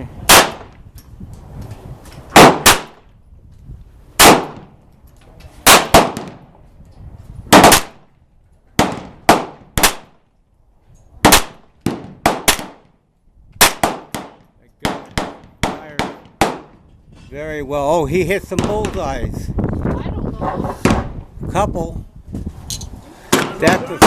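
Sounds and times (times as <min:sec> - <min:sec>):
pistol shots: 0:00.3 - 0:00.7, 0:02.4 - 0:03.0, 0:04.2 - 0:04.7, 0:05.6 - 0:06.5, 0:07.5 - 0:08.1, 0:08.8 - 0:10.2, 0:11.2 - 0:12.9, 0:13.6 - 0:16.8.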